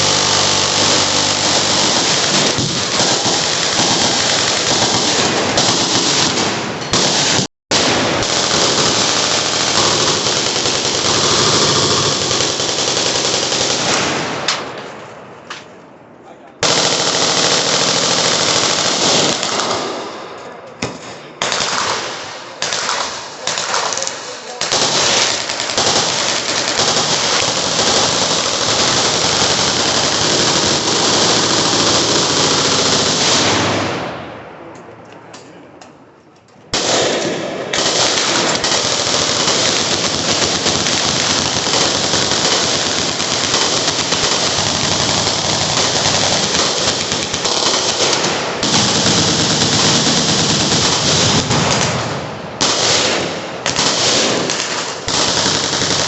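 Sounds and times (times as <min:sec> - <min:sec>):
machine guns firing: 0:00.0 - 0:14.8, 0:16.6 - 0:34.4, 0:36.7 - 0:56.0.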